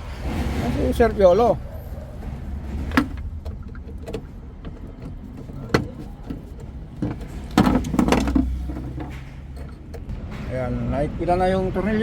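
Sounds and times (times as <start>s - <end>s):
metallic clicks and knocks: 2.3s - 10.6s.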